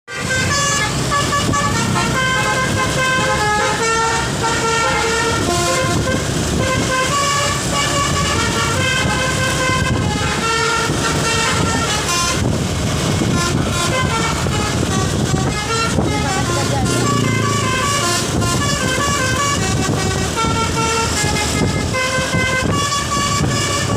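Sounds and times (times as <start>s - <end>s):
bus multi-tone horn tune: 0.1s - 23.9s
low rumble: 7.6s - 23.9s.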